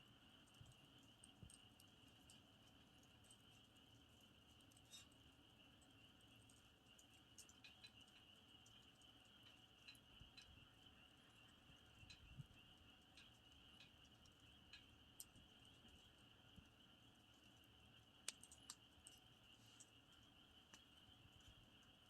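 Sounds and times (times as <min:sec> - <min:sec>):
crickets chirring: 0:00.0 - 0:22.0
campfire crackling: 0:00.4 - 0:22.0.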